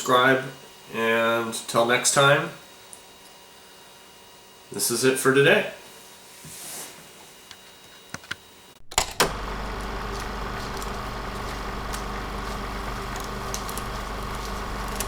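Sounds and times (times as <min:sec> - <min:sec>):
toy bulldozer electric motor humming: 0:08.9 - 0:15.0.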